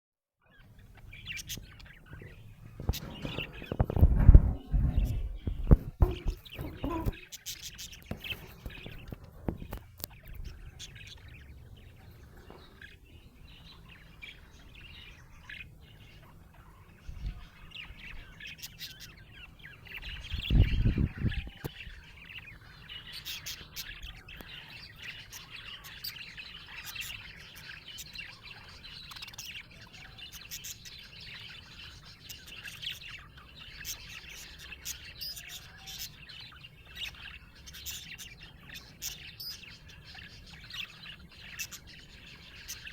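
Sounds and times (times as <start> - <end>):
budgerigars chirping: 0.4 - 42.9.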